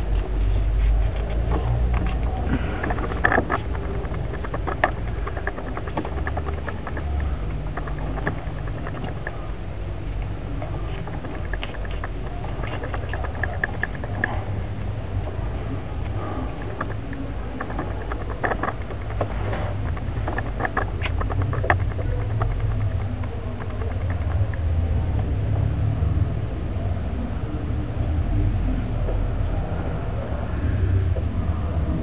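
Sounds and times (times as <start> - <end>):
low steady rumble: 0.0 - 32.0
small clicks and rustling: 0.1 - 9.4, 10.0 - 15.4, 16.0 - 25.3.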